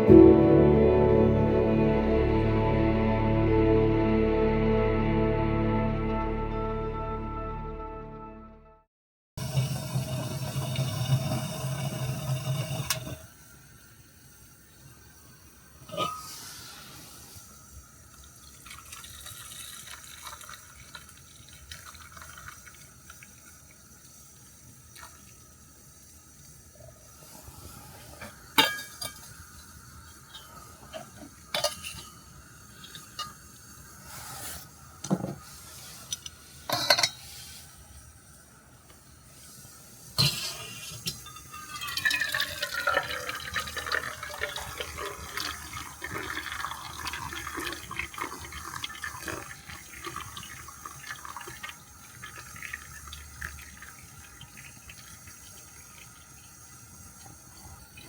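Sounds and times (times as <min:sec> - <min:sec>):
liquid pouring into container: 0:18.1 - 0:25.5, 0:41.4 - 0:58.0.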